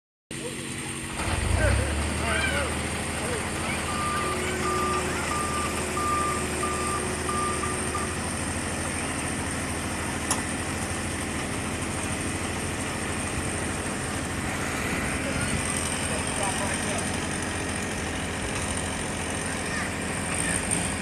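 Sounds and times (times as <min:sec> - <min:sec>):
diesel engine idling: 0:00.3 - 0:21.0
reversing alarm beeping: 0:03.8 - 0:08.3.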